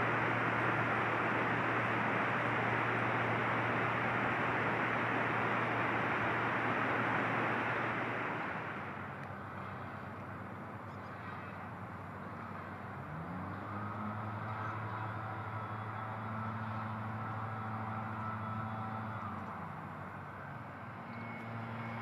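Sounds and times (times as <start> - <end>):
broad rush of noise: 0.0 - 22.0
engine hum: 0.0 - 22.0.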